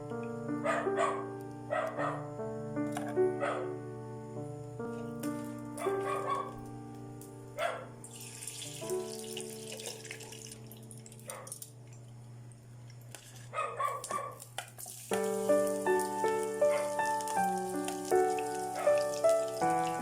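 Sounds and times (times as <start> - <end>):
soft background music: 0.0 - 20.0
dog barking: 0.6 - 2.2, 3.4 - 3.8, 5.8 - 6.6, 7.6 - 7.9, 11.2 - 11.6, 13.5 - 14.4, 16.6 - 17.0
running water hiss: 8.0 - 11.8, 14.0 - 20.0.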